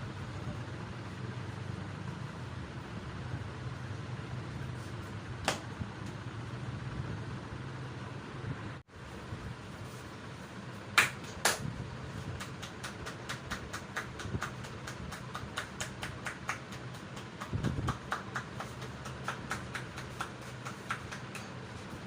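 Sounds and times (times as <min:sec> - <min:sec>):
steady low hum: 0:00.0 - 0:22.0
hands tapping on the body: 0:05.4 - 0:05.6, 0:12.4 - 0:21.6
loud slaps: 0:05.4 - 0:06.2, 0:11.0 - 0:11.7.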